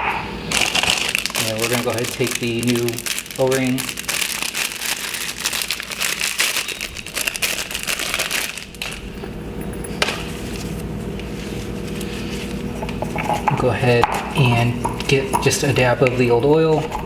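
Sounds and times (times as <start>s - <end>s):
plastic packaging crinkling: 0.5s - 9.3s.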